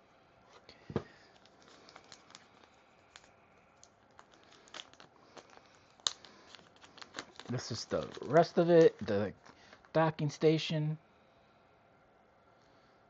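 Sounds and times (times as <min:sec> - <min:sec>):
packaging rustling and clicking: 0:01.0 - 0:09.9.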